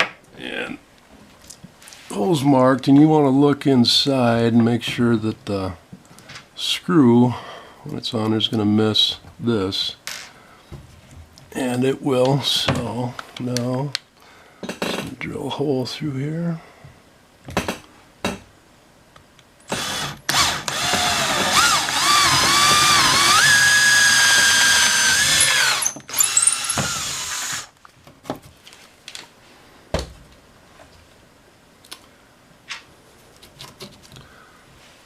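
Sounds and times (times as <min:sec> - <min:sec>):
power drill whining: 0:19.7 - 0:27.7.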